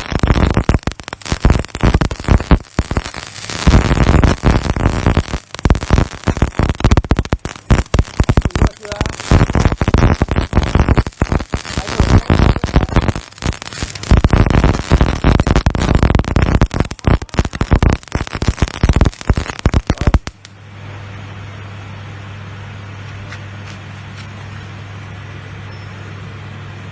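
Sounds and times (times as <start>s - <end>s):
arc welding crackling: 0.0s - 20.6s
welding machine hum: 0.0s - 21.7s.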